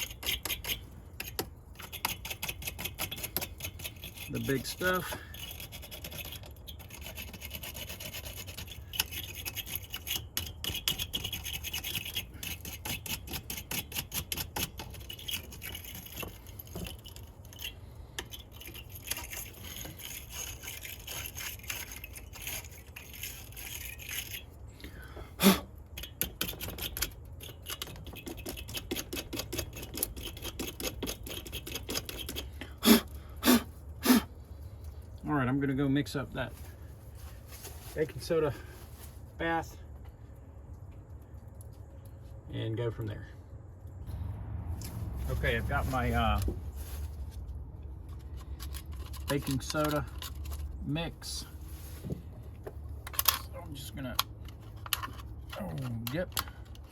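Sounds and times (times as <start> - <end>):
wire brush scrubbing metal: 0.0 - 24.7, 25.4 - 34.3.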